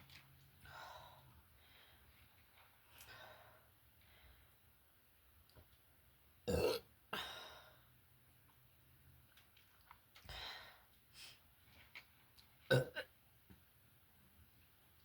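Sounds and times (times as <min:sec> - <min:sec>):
person burping: 0:06.5 - 0:06.9, 0:12.7 - 0:13.1.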